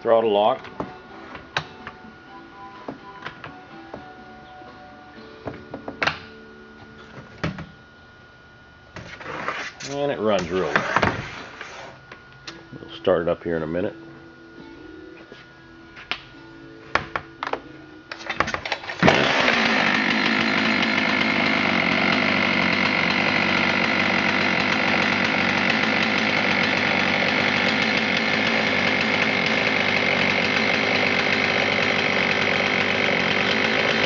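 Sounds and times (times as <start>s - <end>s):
chainsaw starting and running: 18.1s - 34.0s.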